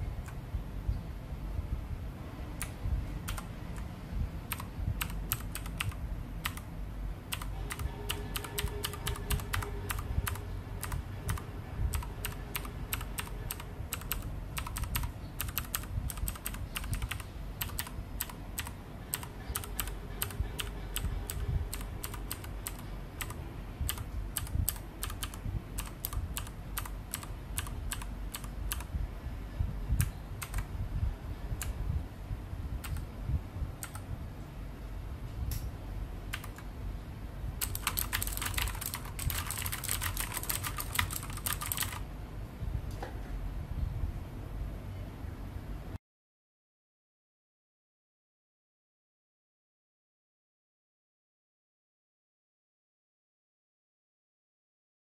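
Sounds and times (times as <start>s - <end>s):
mechanical keyboard typing clicks: 2.6s - 3.9s, 4.5s - 6.7s, 7.3s - 28.9s, 30.0s - 30.7s, 36.3s - 36.7s, 37.6s - 42.0s.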